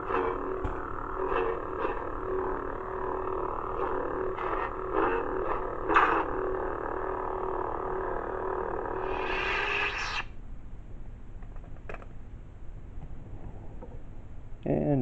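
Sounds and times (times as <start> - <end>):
lightsaber electric hum: 0.0 - 10.6
lightsaber power-down: 0.1 - 10.3.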